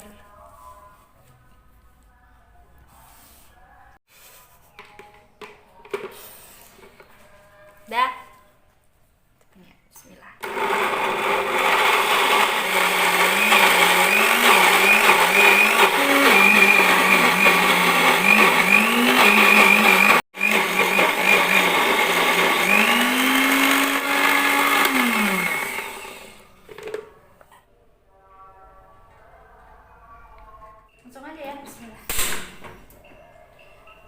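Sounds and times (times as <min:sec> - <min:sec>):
electric blender grinding: 0:10.4 - 0:26.5.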